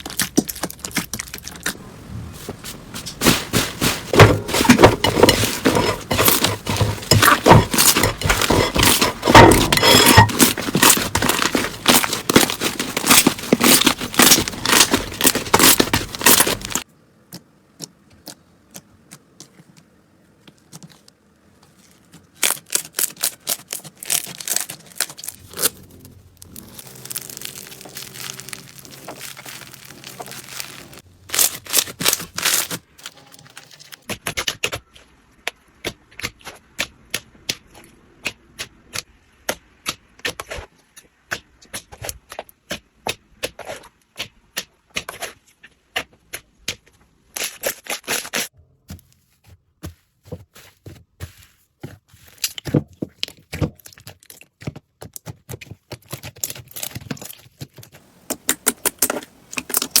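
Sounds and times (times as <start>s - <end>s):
slime clicking and crackling: 0.0s - 1.8s, 7.4s - 16.8s, 22.3s - 25.8s, 26.4s - 32.9s, 53.3s - 60.0s.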